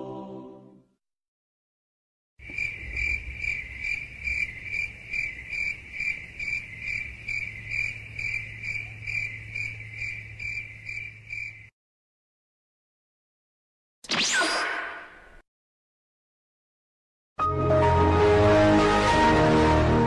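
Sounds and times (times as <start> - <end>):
cricket chirping: 2.4 - 11.7.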